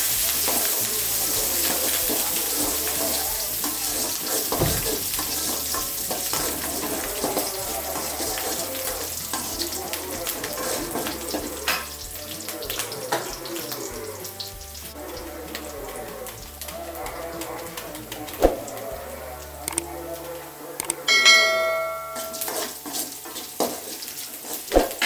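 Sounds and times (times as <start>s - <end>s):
food sizzling in a pan: 0.0s - 19.6s, 21.6s - 25.0s
utensil clicking against pan: 19.6s - 19.9s, 20.8s - 21.0s.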